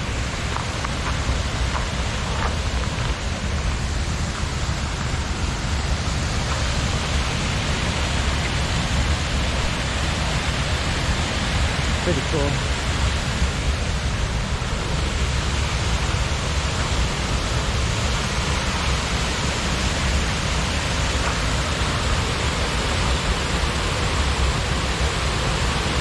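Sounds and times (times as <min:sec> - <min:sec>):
waterfall running: 0:00.0 - 0:26.0.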